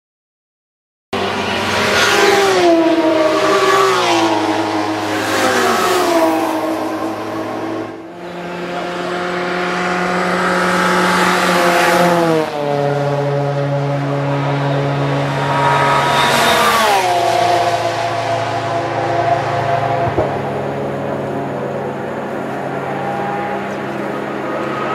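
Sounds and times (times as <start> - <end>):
race cars passing at high speed: 1.2 - 24.9.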